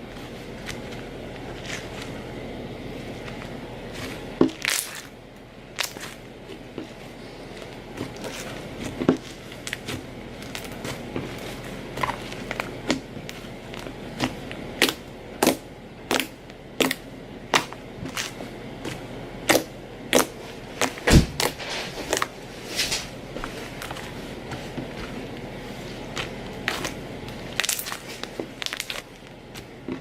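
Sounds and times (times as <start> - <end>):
heavy thump: 21.0 - 21.6.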